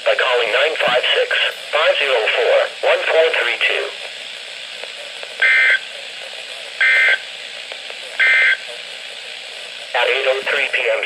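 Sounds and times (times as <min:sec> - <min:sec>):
digital data tone bursts: 0:05.4 - 0:05.9, 0:06.8 - 0:07.3, 0:08.2 - 0:08.7.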